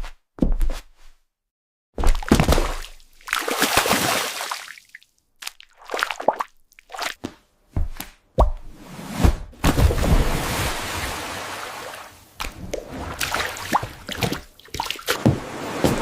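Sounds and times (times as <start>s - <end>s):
wet squishes: 2.0s - 7.2s, 12.4s - 15.2s.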